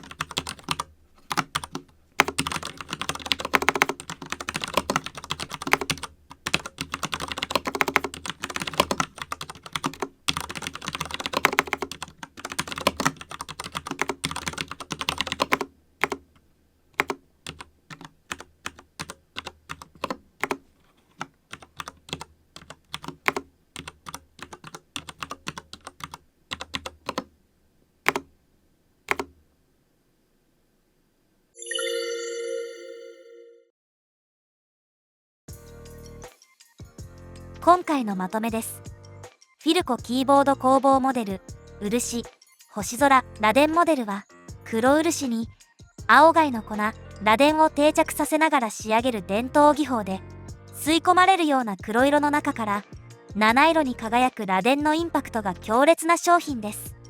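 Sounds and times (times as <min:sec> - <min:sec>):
typing on mechanical keyboard: 0:00.0 - 0:16.2, 0:17.0 - 0:27.3, 0:28.1 - 0:28.3, 0:29.1 - 0:29.3.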